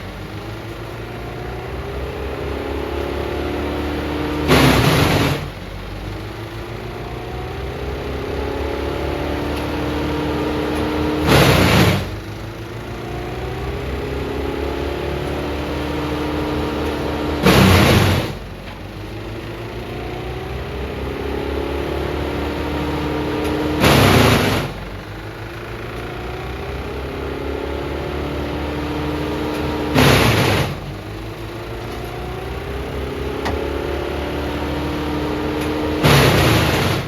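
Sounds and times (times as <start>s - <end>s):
diesel engine running: 0.0s - 37.0s
loud rush of noise: 4.4s - 5.6s, 11.2s - 12.3s, 17.3s - 18.5s, 23.7s - 25.0s, 29.9s - 31.0s, 36.0s - 37.0s.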